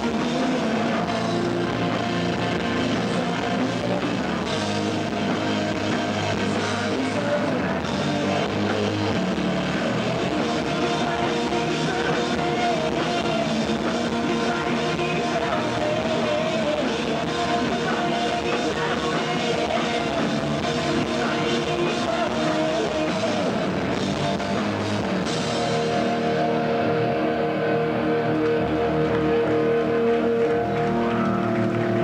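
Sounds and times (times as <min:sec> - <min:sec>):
rock band playing live: 0:00.0 - 0:32.0.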